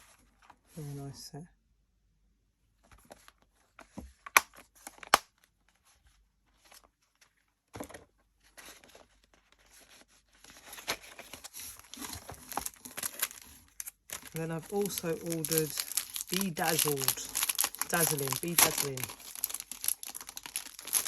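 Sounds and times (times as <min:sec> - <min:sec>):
packaging crinkling and tearing: 0:08.6 - 0:21.0.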